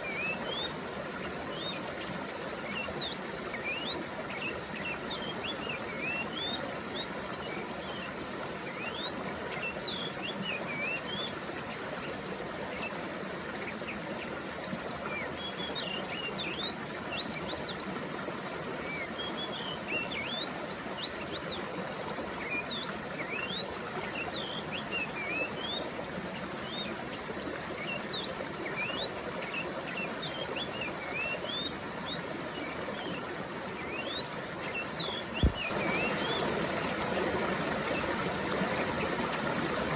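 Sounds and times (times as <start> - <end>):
stream water rushing: 0.0 - 39.9
small birds chirping: 26.6 - 39.9.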